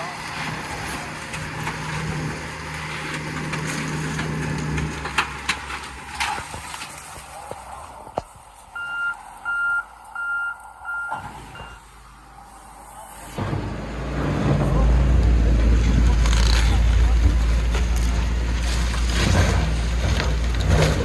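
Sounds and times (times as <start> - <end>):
heavy equipment engine running: 0.0 - 21.0
reversing alarm beeping: 8.8 - 11.9.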